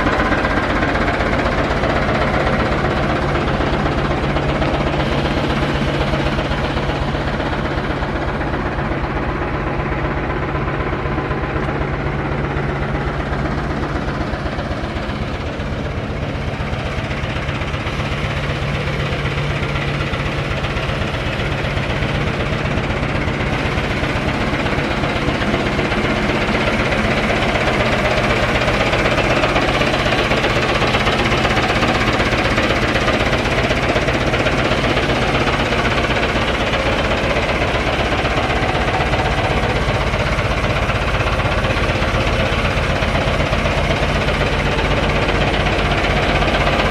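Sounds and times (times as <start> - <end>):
diesel engine knocking: 0.0 - 46.9.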